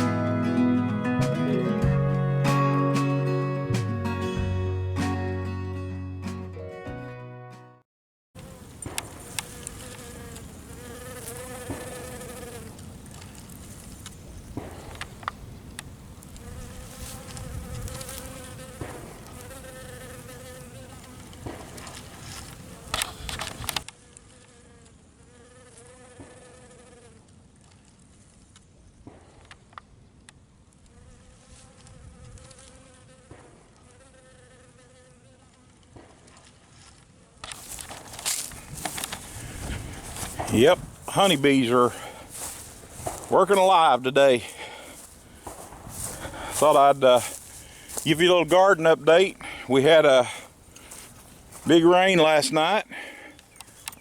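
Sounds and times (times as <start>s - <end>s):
honeybees buzzing: 8.4s - 23.9s, 37.6s - 54.0s.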